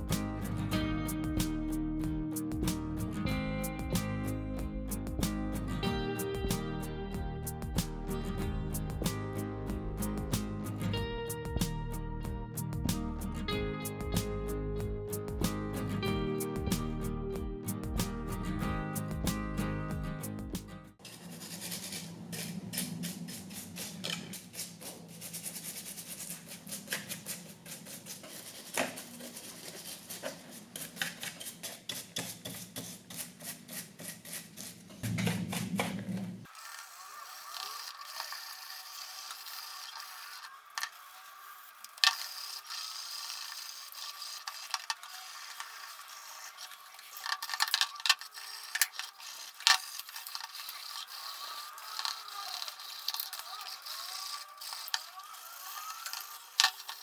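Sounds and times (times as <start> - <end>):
low hum: 0.0 - 20.6
hand tool scraping and rubbing: 21.0 - 57.0.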